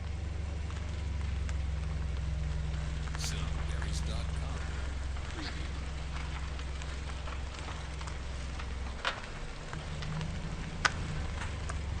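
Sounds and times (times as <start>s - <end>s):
car tyres rolling over gravel: 5.8s - 12.0s.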